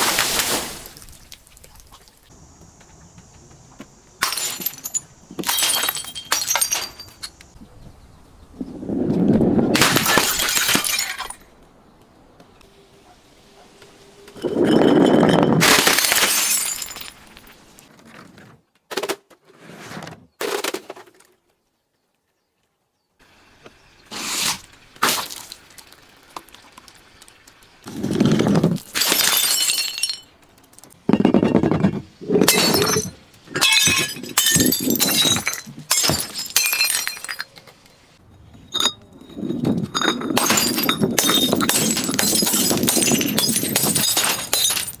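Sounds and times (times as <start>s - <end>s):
glass bottles smashing: 4.2s - 7.4s, 9.8s - 11.5s, 14.4s - 17.6s, 28.0s - 30.4s, 32.3s - 37.7s, 38.7s - 45.0s
glass shards clinking: 4.2s - 7.4s, 9.9s - 11.4s, 14.4s - 17.6s, 28.2s - 31.4s, 32.4s - 37.8s, 38.6s - 45.0s.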